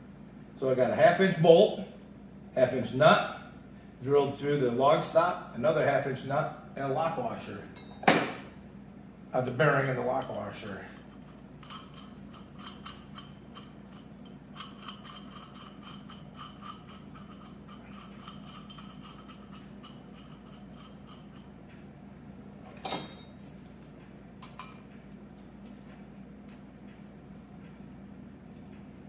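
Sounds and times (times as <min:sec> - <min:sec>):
steady low hum: 0:00.0 - 0:29.0
metallic clank: 0:07.8 - 0:08.6.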